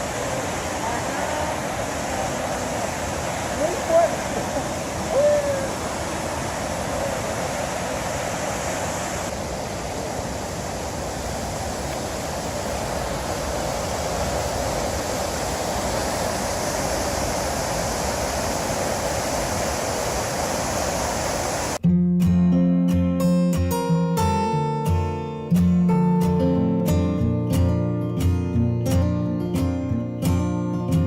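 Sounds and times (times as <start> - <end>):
waterfall roaring: 0.0 - 21.8.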